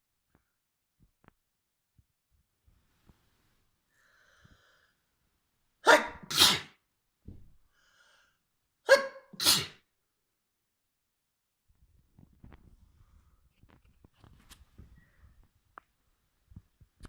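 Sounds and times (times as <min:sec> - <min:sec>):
person sneezing: 0:05.8 - 0:06.8, 0:08.9 - 0:09.8.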